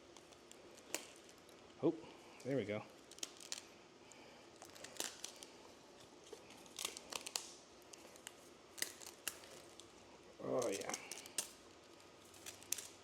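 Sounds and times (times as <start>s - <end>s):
paper filter crinkling and tearing: 3.0s - 13.0s.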